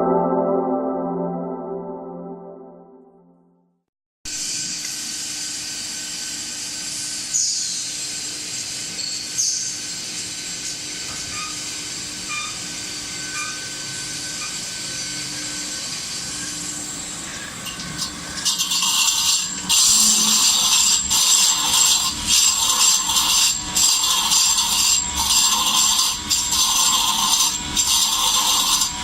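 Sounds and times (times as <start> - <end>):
sharpening machine whine: 7.2 - 29.0
grinding wheel rasping: 12.4 - 29.0.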